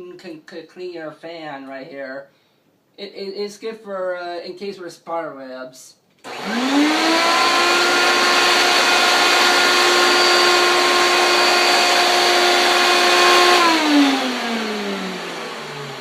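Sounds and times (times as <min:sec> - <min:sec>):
vacuum cleaner motor whining: 0:06.3 - 0:16.0.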